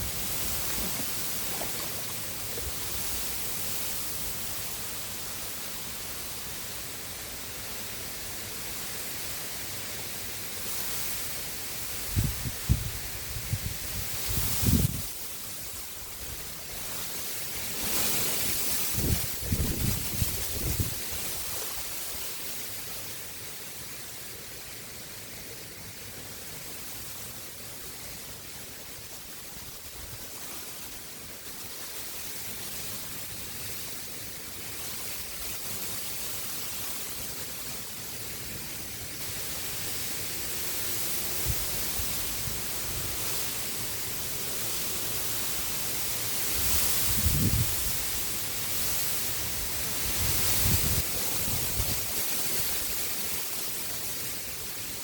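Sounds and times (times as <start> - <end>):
river water rushing: 0.0 - 5.0
wind buffeting microphone: 18.9 - 21.5.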